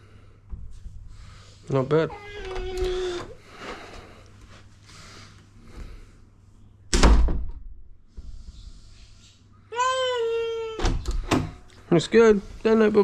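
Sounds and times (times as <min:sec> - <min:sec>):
door shutting with a thunk: 0:06.9 - 0:07.6, 0:10.8 - 0:11.6.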